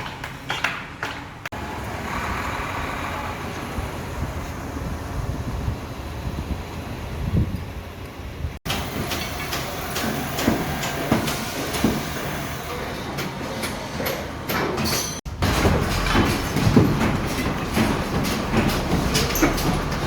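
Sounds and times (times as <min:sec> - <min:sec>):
construction machinery running: 0:01.5 - 0:20.0
metallic clanks and knocks: 0:13.1 - 0:20.0.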